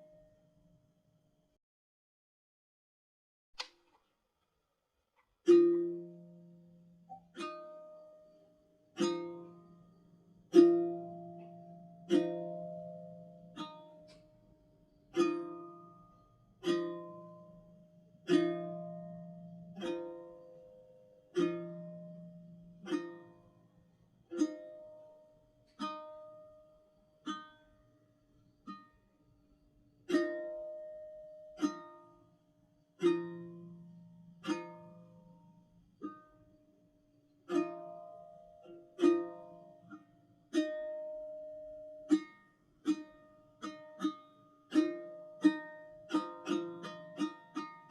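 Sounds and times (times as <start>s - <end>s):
slow plucked-string tune: 5.4s - 14.5s, 15.1s - 23.6s, 24.3s - 26.6s, 27.2s - 27.6s, 30.1s - 32.3s, 33.0s - 36.6s, 37.5s - 47.9s.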